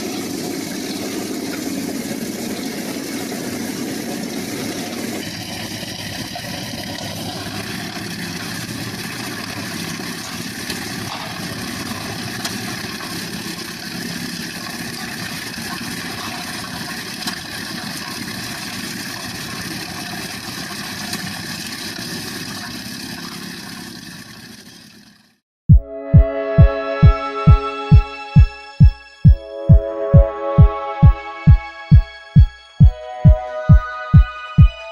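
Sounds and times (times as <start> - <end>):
engine running: 0.0 - 25.3.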